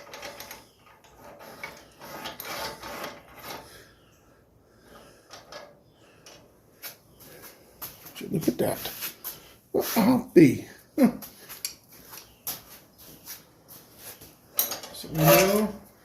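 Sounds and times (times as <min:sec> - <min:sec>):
metal scraping and clinking: 0:00.0 - 0:03.8, 0:05.2 - 0:06.5, 0:14.5 - 0:15.8.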